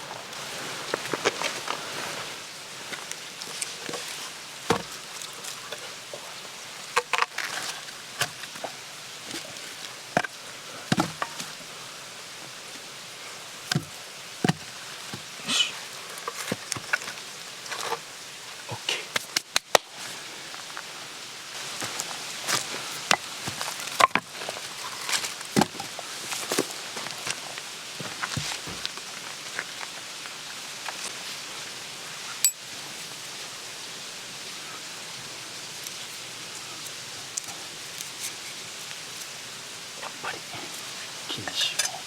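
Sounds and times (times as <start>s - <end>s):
wood being chopped: 4.7s - 5.0s, 10.9s - 11.3s.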